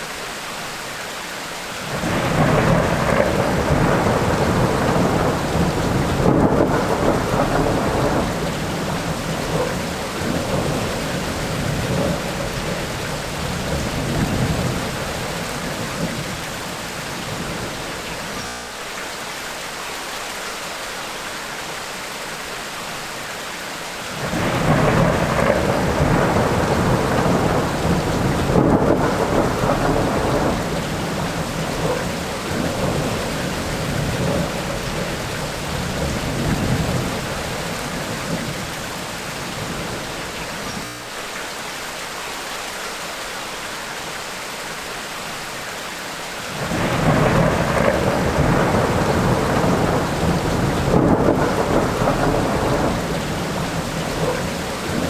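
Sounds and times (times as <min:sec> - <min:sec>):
steady rain: 0:00.0 - 0:55.0
rolling thunder: 0:01.9 - 0:18.4, 0:24.2 - 0:40.8, 0:46.5 - 0:55.0.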